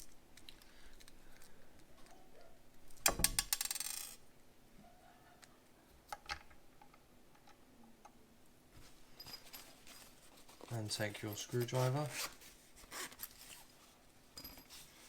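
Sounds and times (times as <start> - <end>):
small screws rattling and clinking: 2.9 - 4.2, 9.2 - 12.0, 14.4 - 15.0.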